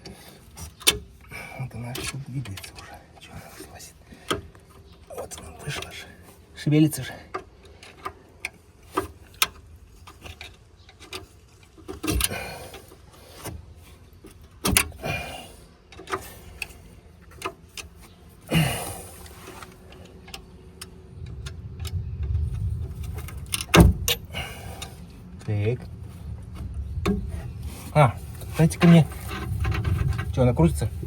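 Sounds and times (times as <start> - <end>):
metal clicks and taps of tools: 15.9 - 18.0
low rumble: 21.1 - 31.0.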